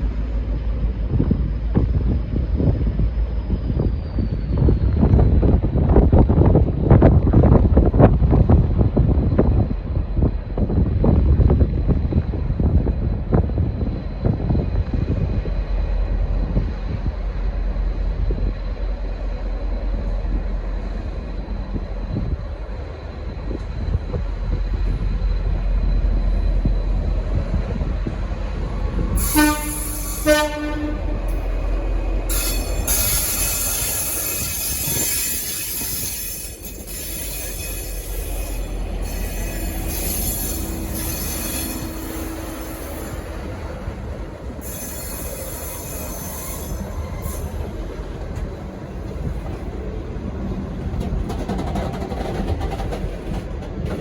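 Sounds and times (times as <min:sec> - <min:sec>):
diesel locomotive rumbling: 0:00.0 - 0:54.0
high-pitched wheel squeal: 0:29.1 - 0:30.8, 0:32.3 - 0:43.9, 0:44.5 - 0:47.8
locomotive horn blasts: 0:29.2 - 0:31.4.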